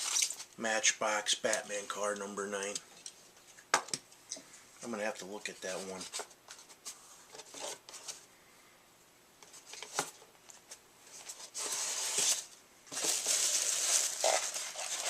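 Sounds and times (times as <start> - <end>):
packaging rustling: 11.2 - 15.0.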